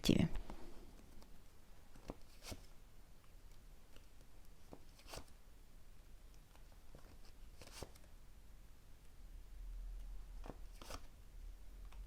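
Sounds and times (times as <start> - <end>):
cards clicking and rustling: 3.5 - 5.4, 6.3 - 8.1, 10.4 - 11.1.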